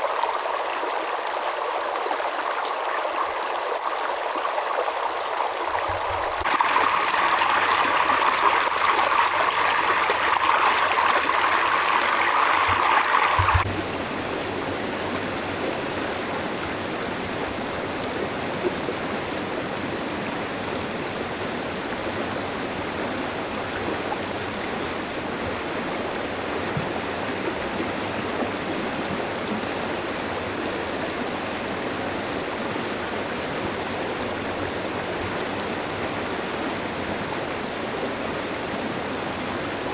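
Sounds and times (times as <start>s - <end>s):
river water babbling over rocks: 0.0s - 39.9s
water splashing: 5.5s - 14.6s.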